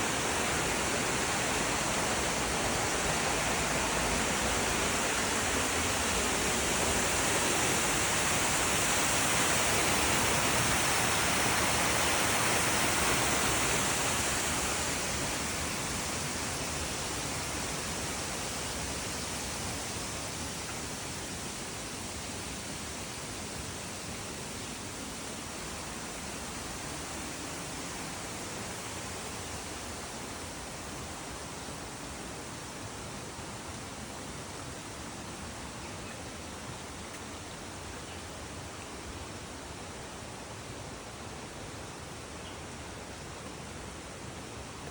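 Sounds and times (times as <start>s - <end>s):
water rushing over rocks: 0.0s - 20.2s.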